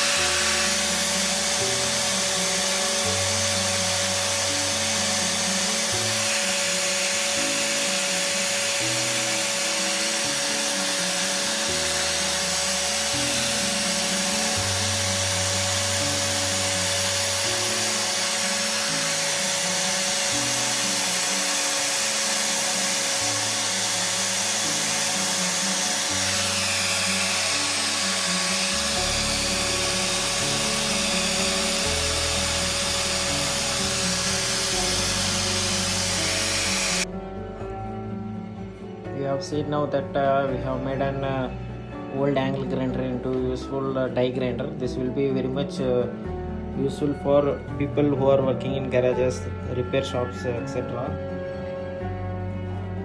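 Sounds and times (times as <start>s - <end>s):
grinder motor whine: 0.0s - 37.2s
background music: 0.0s - 53.0s.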